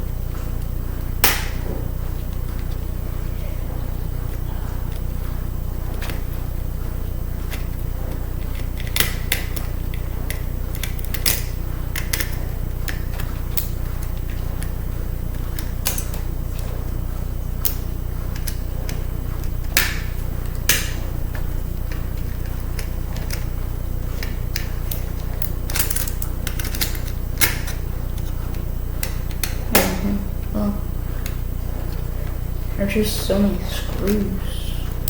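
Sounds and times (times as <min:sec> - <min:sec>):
steady low hum: 0:00.0 - 0:35.0
screwdriver clicking on metal casing: 0:25.7 - 0:28.3.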